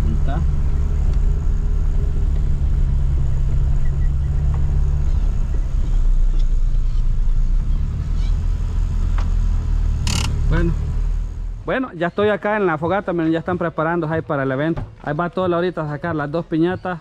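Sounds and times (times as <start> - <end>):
car engine and road rumble: 0.0 - 13.3.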